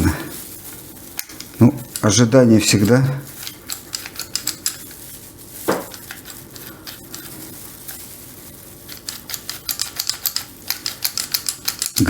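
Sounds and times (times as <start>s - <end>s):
metal lock parts clicking: 1.2s - 4.8s, 8.9s - 12.0s.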